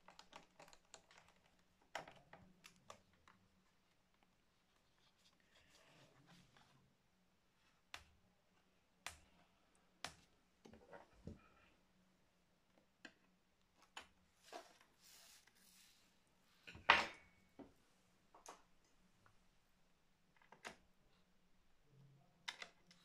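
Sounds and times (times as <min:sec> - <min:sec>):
hands handling plastic laptop case: 0:00.0 - 0:06.8.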